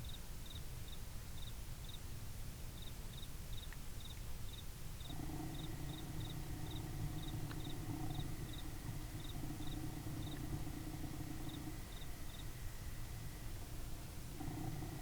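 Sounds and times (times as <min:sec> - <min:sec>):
cricket chirping: 0:02.8 - 0:15.0
steady low hum: 0:04.5 - 0:15.0.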